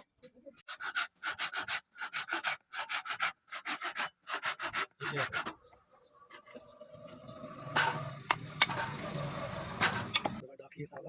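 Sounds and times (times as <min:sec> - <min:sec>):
hand file rasping on steel: 0:00.6 - 0:05.6.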